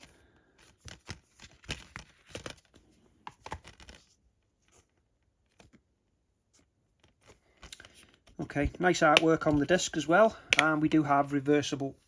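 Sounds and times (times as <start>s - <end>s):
plastic case crackling and clicking: 10.5s - 11.0s.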